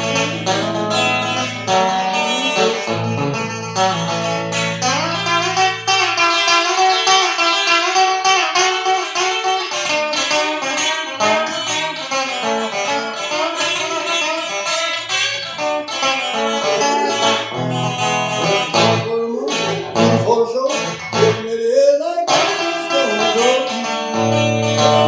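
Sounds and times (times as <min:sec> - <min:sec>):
bass notes: 0:00.0 - 0:06.4
picked guitar music: 0:00.0 - 0:25.0.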